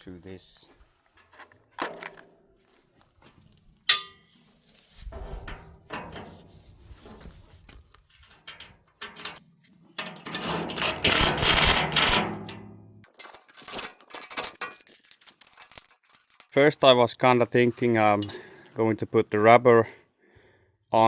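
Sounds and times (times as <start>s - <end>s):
metal part clinking: 3.9s - 4.2s, 8.5s - 9.4s, 10.0s - 16.6s
small electric power tool running: 10.3s - 12.3s.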